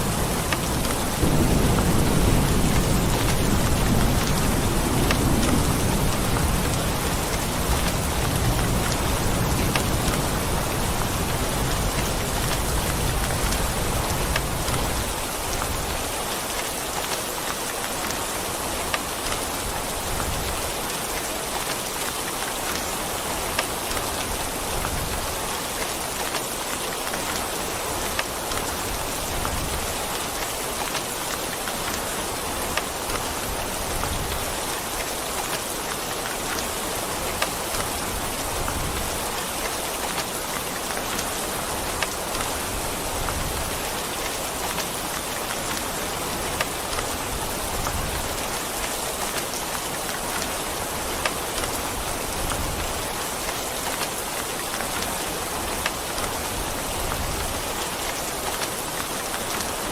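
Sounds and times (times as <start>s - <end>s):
low thunder rumble: 0.0s - 15.1s
rain falling: 0.0s - 59.9s
raindrops ticking: 0.3s - 19.6s.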